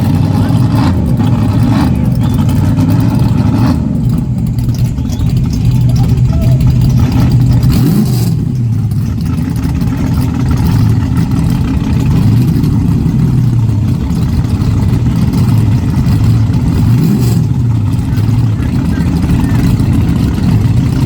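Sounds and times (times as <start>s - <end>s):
heavy engine revving: 0.0s - 21.0s.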